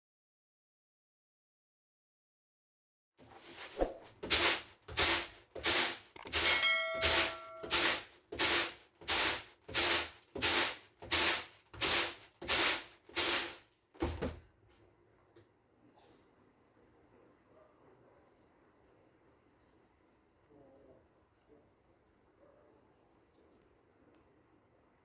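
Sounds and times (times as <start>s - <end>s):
metal utensil being scrubbed: 3.5s - 8.7s
short metallic ring: 6.2s - 8.0s.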